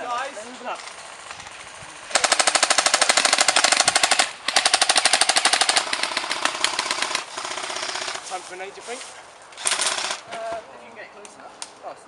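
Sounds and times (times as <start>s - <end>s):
airsoft rifle automatic fire: 2.1s - 8.2s, 9.6s - 10.2s.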